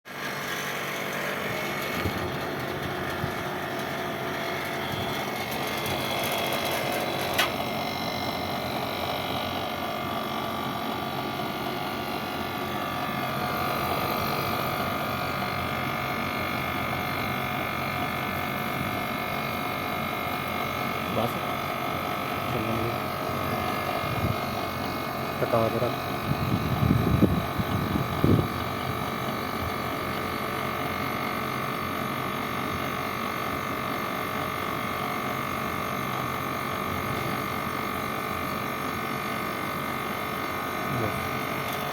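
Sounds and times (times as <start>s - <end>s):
air conditioner humming: 0.1s - 30.2s.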